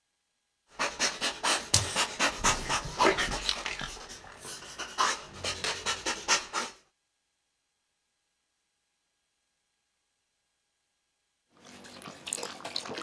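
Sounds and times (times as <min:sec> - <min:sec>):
dog panting rapidly: 0:00.7 - 0:06.8.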